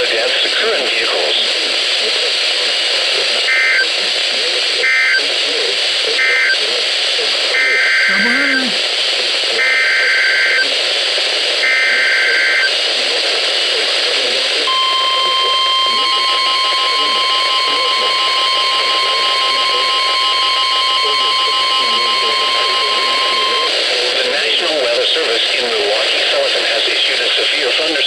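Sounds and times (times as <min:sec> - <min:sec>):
radio hiss: 0:00.0 - 0:28.0
steady alarm tone: 0:14.7 - 0:23.7.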